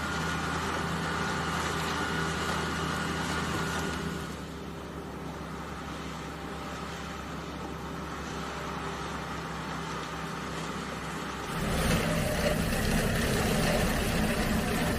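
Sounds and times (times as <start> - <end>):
heavy farm machinery drone: 0.0 - 14.9
rattling machine noise: 11.5 - 14.9.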